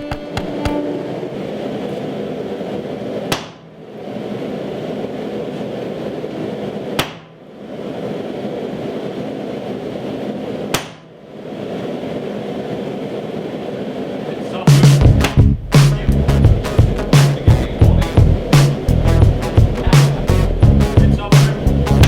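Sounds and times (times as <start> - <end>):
hammer blows on steel: 0.0 - 1.6
forge rushing noise: 0.0 - 10.7, 11.3 - 22.0.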